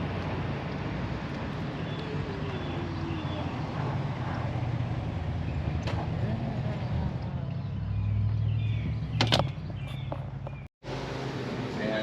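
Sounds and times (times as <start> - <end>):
vehicle rumble: 0.0 - 12.0.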